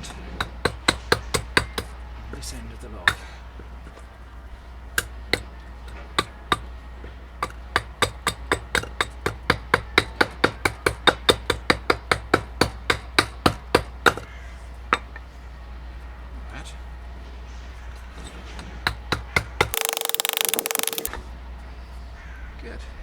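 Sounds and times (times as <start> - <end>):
hatchet chopping wood: 0.4 - 2.0, 5.0 - 6.7, 7.4 - 14.2, 18.9 - 21.1.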